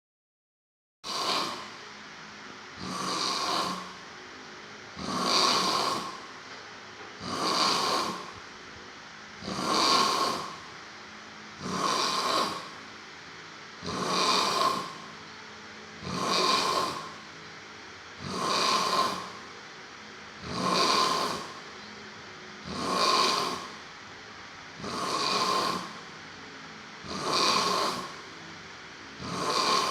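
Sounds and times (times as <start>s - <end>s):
person snoring: 1.0s - 1.8s, 2.8s - 4.0s, 5.0s - 6.4s, 7.2s - 8.5s, 9.4s - 10.8s, 11.6s - 12.8s, 13.8s - 15.1s, 16.0s - 17.3s, 18.2s - 19.5s, 20.4s - 21.7s, 22.6s - 23.8s, 24.8s - 26.1s, 27.0s - 28.2s, 29.2s - 29.9s.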